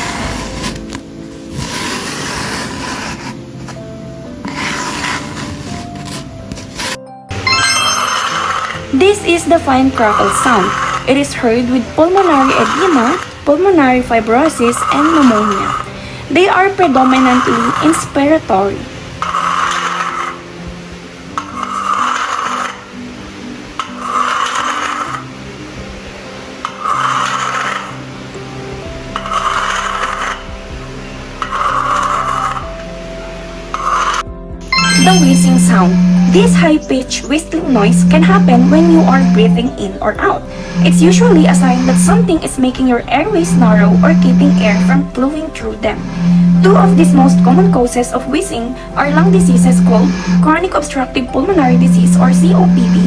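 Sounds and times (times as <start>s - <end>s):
soft background music: 0.0s - 53.0s
lung crackles: 33.7s - 53.0s.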